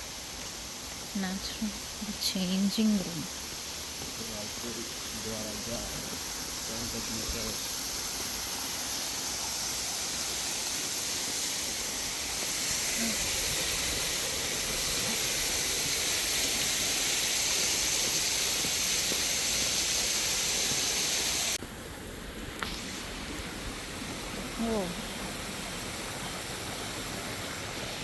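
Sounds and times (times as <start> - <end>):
waterfall rushing: 3.3 - 21.6.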